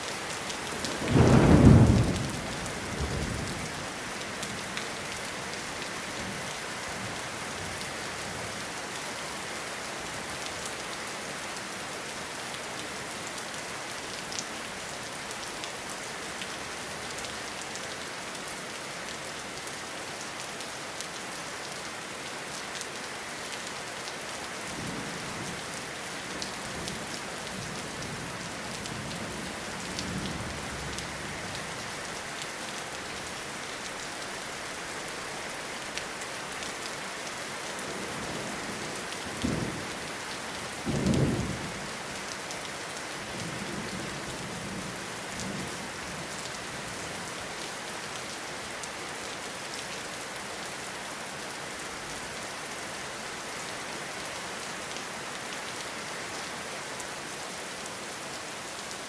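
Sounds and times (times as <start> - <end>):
steady rain falling: 0.0 - 59.0
thunder rumbling: 1.0 - 3.5.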